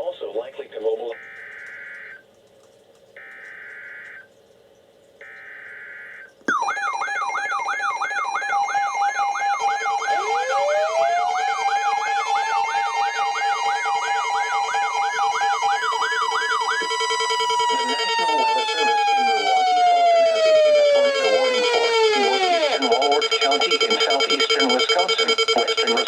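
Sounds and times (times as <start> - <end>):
weather alert radios alarms: 1.0 - 2.3, 3.1 - 26.0
weather radio alert buzzing bursts: 1.1 - 2.3, 3.2 - 4.3, 5.2 - 6.6, 7.2 - 26.0
fast warbling siren tone: 5.2 - 26.0
pulsing beep: 6.5 - 19.6, 20.3 - 26.0
rising wail: 8.0 - 22.9.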